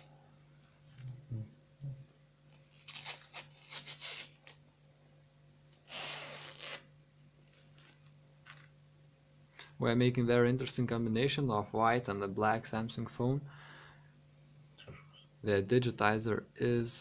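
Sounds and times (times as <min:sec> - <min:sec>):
faint low hum: 0:00.0 - 0:17.0
adhesive tape ripping: 0:02.5 - 0:04.6, 0:05.8 - 0:06.9.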